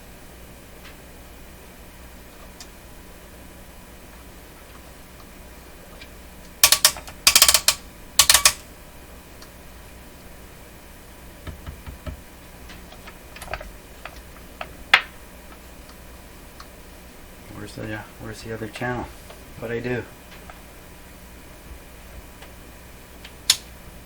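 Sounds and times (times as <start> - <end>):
rotary switches clicking: 6.0 - 8.6, 23.2 - 23.7.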